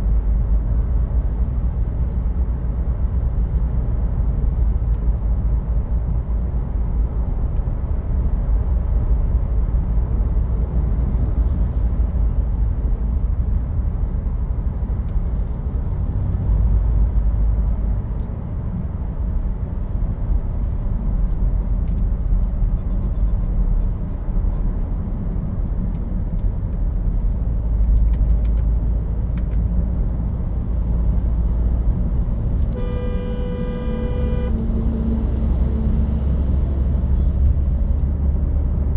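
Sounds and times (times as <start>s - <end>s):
car engine and road noise: 0.0s - 38.9s
car horn: 32.6s - 35.0s.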